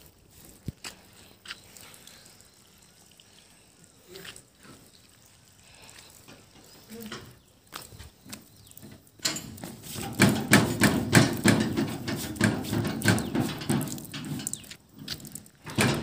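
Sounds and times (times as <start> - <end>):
rapid irregular knocking: 9.6 - 14.6.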